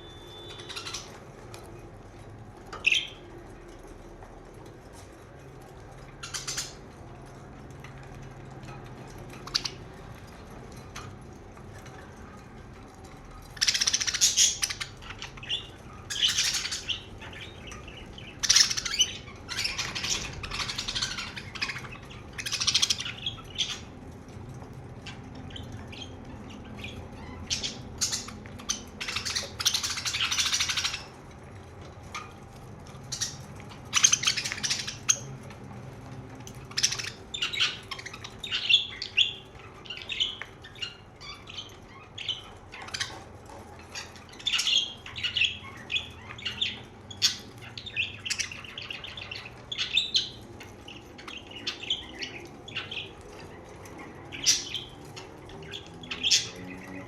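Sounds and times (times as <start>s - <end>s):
budgerigars chirping and chattering: 0.0s - 57.0s.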